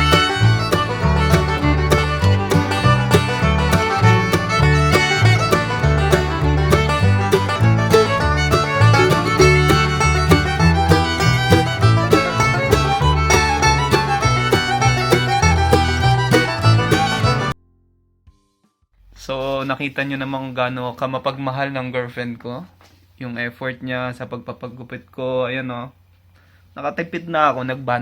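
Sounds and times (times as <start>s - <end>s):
plucked guitar or banjo: 0.0s - 17.6s
upbeat bluegrass tune on fiddle: 0.0s - 17.6s.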